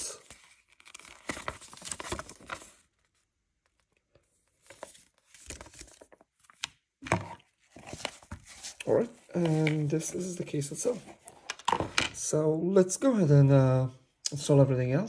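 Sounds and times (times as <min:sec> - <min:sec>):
packaging rustling and crinkling: 0:00.2 - 0:03.2, 0:04.5 - 0:10.3.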